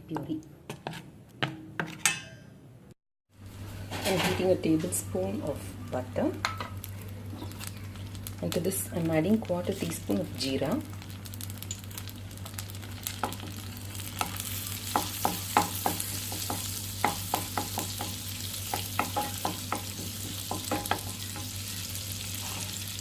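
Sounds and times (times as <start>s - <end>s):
seeds sizzling in butter: 5.0s - 23.0s.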